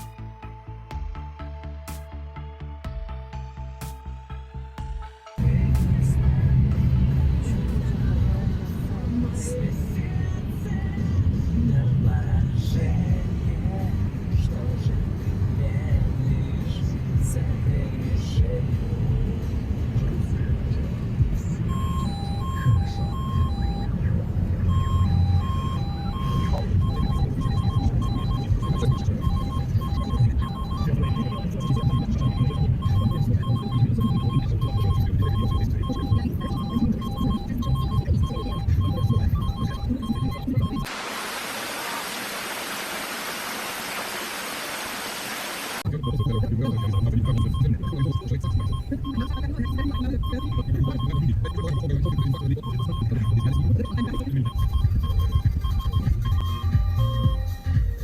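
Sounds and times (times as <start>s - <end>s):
car engine running rumble: 5.4s - 40.8s
two-tone alarm beeps: 21.7s - 24.0s, 24.6s - 40.9s, 45.8s - 58.0s
static hiss: 40.9s - 45.8s.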